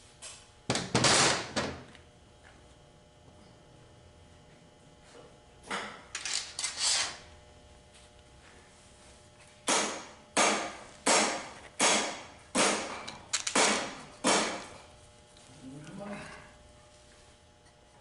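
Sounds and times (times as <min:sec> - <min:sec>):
hand tool scraping metal: 0:06.2 - 0:07.2.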